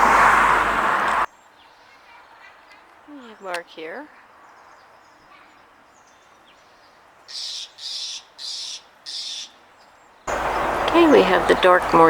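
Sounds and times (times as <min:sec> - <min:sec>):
faint distant bird chirping: 0:00.0 - 0:12.0
bird's harsh rasping call: 0:01.5 - 0:10.8.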